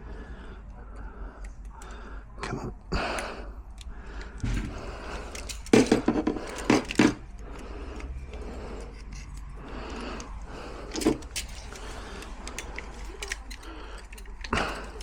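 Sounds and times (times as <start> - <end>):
door lock clunking and rattling: 4.3 - 7.4.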